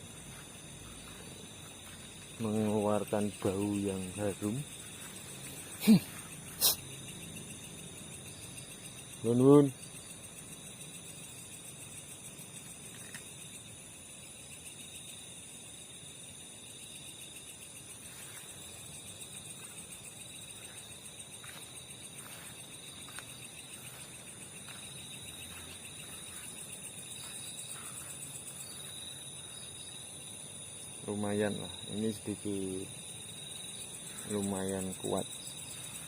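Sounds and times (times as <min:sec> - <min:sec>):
crickets trilling: 0:00.0 - 0:36.0.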